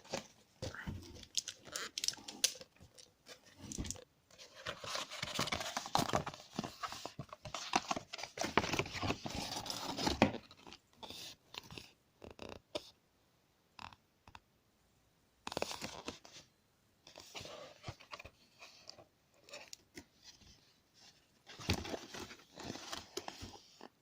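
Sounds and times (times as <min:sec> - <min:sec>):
packaging tearing and crinkling: 0:01.2 - 0:04.0.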